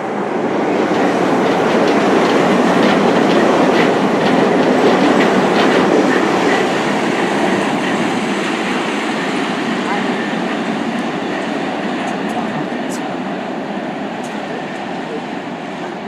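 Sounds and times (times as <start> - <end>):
train rumbling past: 0.0 - 16.0
wheels clicking over rail joints: 0.9 - 13.0.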